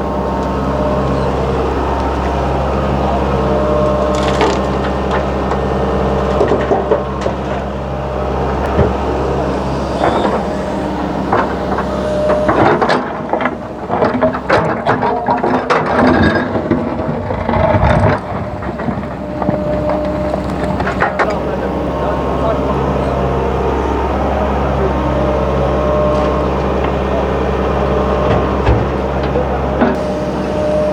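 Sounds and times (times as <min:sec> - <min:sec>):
diesel engine running: 0:00.0 - 0:30.9.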